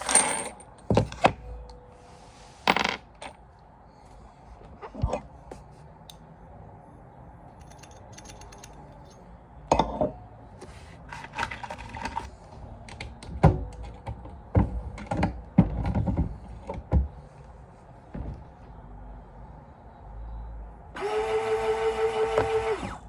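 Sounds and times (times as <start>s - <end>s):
metallic clicks and clinks: 7.5s - 10.0s.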